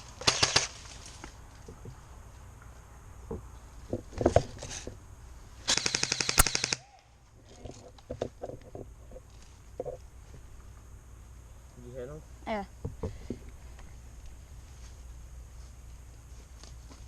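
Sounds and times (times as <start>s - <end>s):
airsoft gun firing: 5.7s - 6.8s.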